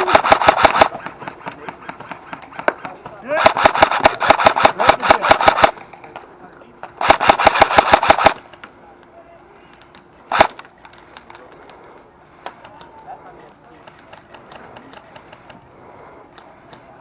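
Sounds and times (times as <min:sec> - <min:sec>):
airsoft rifle bursts: 0:00.0 - 0:05.8, 0:07.0 - 0:08.6, 0:10.3 - 0:11.2
faint distant shots: 0:00.0 - 0:06.0, 0:06.9 - 0:08.7, 0:10.3 - 0:11.5.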